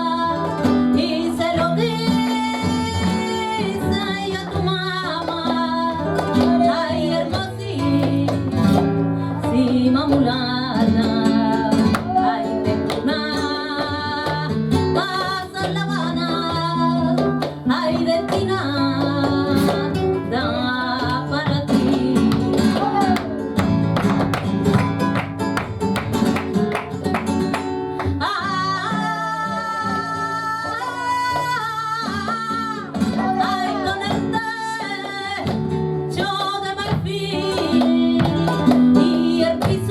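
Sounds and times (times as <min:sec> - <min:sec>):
person singing: 0:00.0 - 0:23.4, 0:28.1 - 0:35.5
acoustic guitar strumming and plucking: 0:00.0 - 0:39.9.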